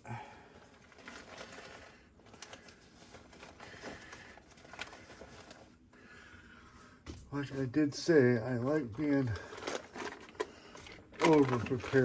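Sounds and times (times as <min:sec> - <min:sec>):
plastic rustling: 0:00.5 - 0:06.2, 0:08.6 - 0:12.0.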